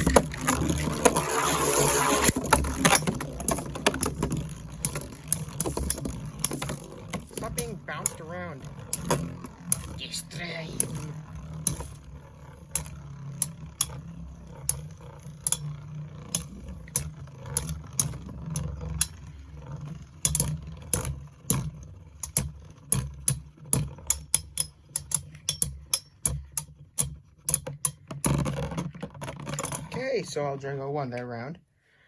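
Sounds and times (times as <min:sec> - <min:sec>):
steady low hum: 0:00.0 - 0:23.5
spinning tops clicking and clacking: 0:00.0 - 0:30.4.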